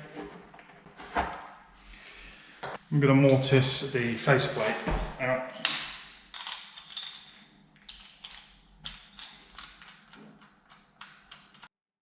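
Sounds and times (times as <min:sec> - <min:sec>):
metal tools clicking and tapping: 0:06.4 - 0:11.7.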